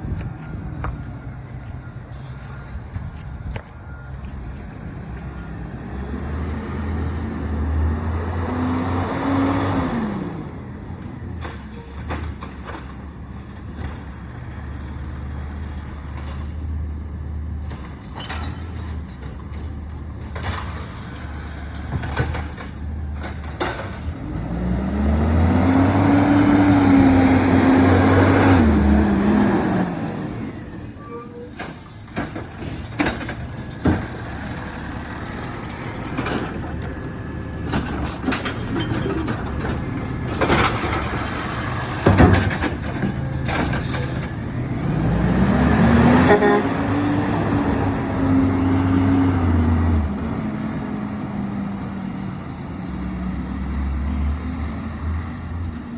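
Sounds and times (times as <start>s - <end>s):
truck engine idling and revving: 0.0s - 55.9s
clunks: 17.6s - 24.2s, 31.2s - 44.6s.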